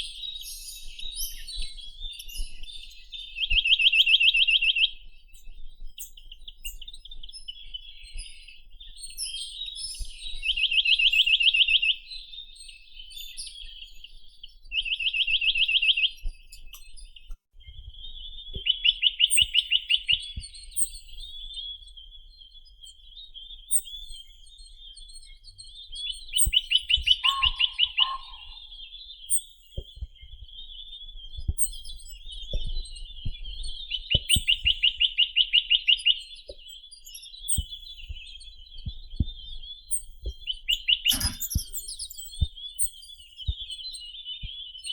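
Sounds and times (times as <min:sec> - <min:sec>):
soft bird twittering: 0:00.0 - 0:44.9
bird singing fast trills: 0:26.2 - 0:30.0.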